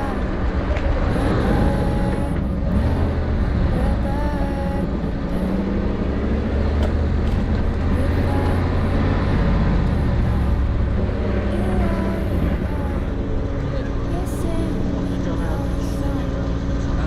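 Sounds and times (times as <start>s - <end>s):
vehicle engine low rumble: 0.0s - 17.0s.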